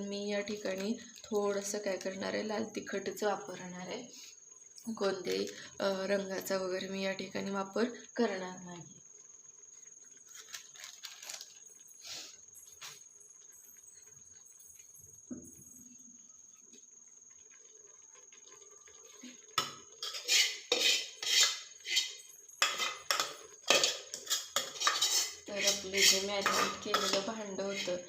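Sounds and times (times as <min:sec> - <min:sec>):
metal spoon scraping a pot: 0:19.1 - 0:28.0.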